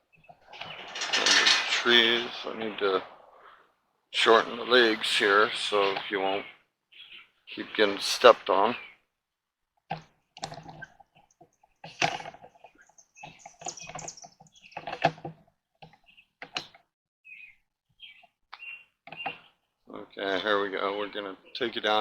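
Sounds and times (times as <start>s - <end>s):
tripod legs clicking and rattling: 0.5s - 2.5s.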